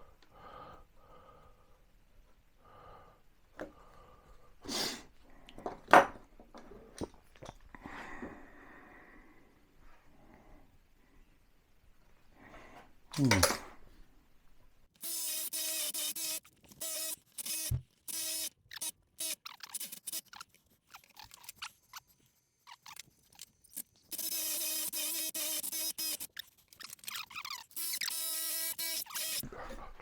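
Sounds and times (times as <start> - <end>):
cordless drill boring through wood: 15.0 - 20.3, 24.1 - 29.4.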